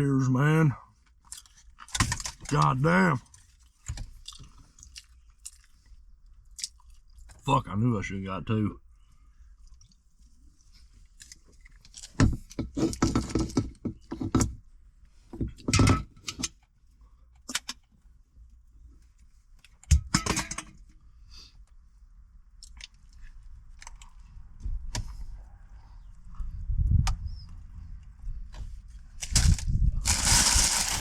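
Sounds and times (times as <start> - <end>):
rustling and clicking: 29.2 - 31.0.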